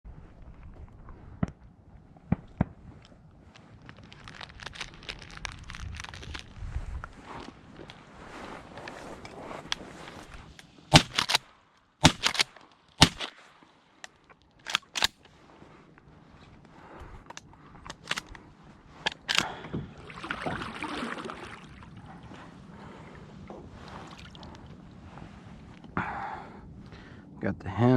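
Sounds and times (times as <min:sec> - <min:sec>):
shotgun shots: 0:10.9 - 0:11.4, 0:12.0 - 0:13.4.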